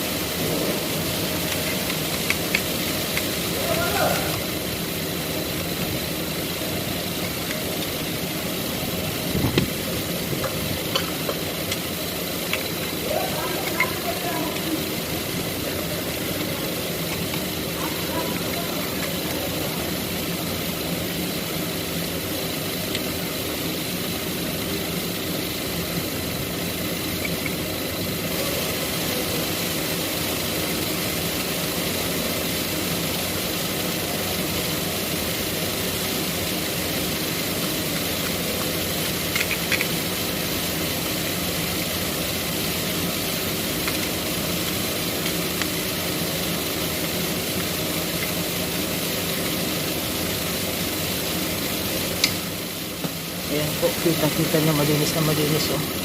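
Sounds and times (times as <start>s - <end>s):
machine humming and hissing: 0.0s - 56.0s.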